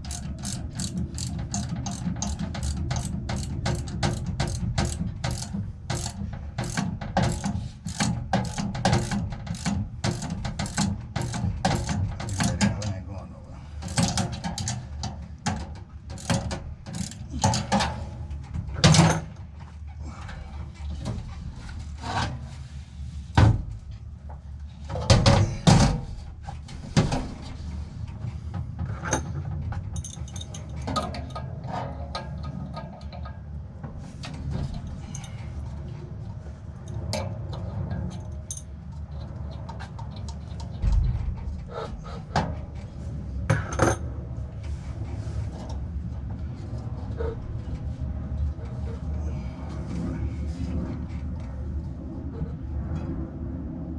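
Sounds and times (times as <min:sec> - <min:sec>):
metallic clanks and rattles of tools: 0:00.0 - 0:13.0, 0:13.8 - 0:19.5, 0:28.8 - 0:33.4, 0:34.2 - 0:35.7, 0:36.9 - 0:41.5
steady low hum: 0:00.0 - 0:53.9.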